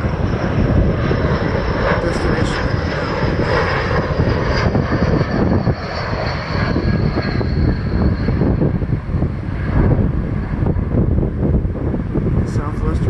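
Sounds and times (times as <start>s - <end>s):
jet airliner engine rushing: 0.0s - 13.0s.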